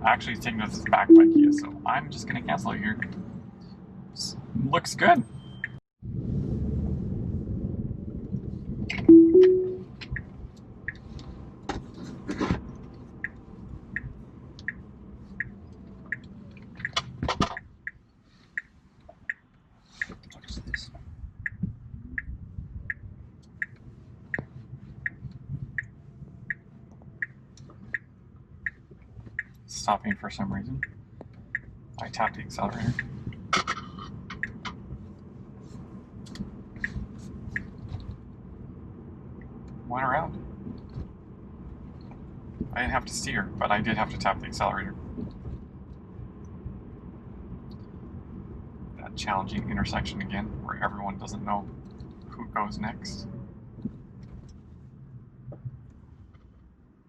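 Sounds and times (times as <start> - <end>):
cabin road noise: 0.0 - 5.8, 6.5 - 57.0
turn signal ticking: 0.8 - 2.0, 5.5 - 5.8, 8.9 - 11.4, 12.7 - 35.3, 36.1 - 38.2.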